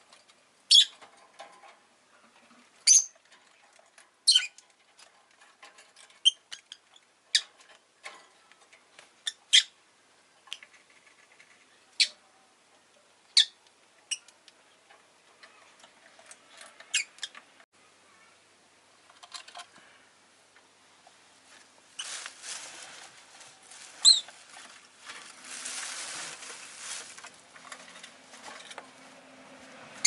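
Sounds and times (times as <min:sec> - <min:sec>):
faint ticks and scratching: 0:00.0 - 0:09.1, 0:10.4 - 0:12.0
lovebird chirping and squawking: 0:00.7 - 0:01.0, 0:02.8 - 0:03.2, 0:04.3 - 0:04.6, 0:09.2 - 0:09.8, 0:24.0 - 0:24.3.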